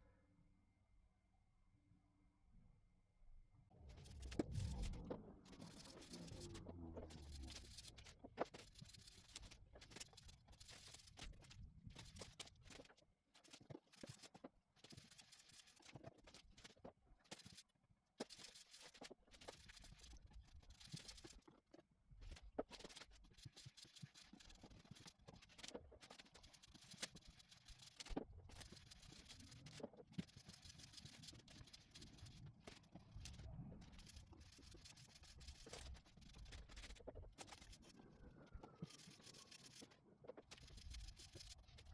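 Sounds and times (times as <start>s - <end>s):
faint scrubbing strokes: 22.6s - 41.9s.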